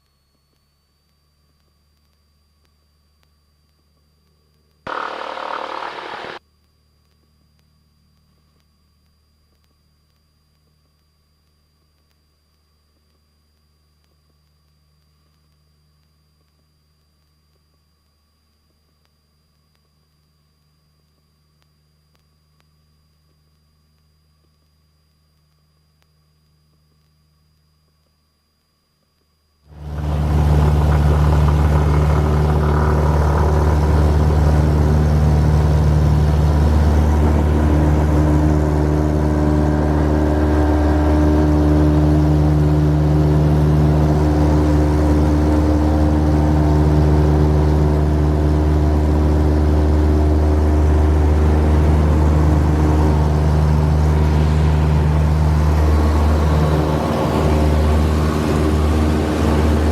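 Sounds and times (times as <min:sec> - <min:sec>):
propeller plane engine drone: 0:04.9 - 0:06.4, 0:29.7 - 0:59.9.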